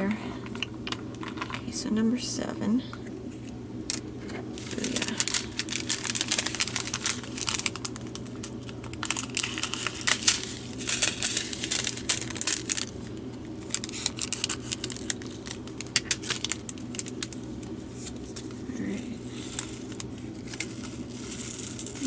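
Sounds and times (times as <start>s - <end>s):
plastic packet crinkling: 0.5s - 1.7s, 3.9s - 18.6s, 19.2s - 22.0s.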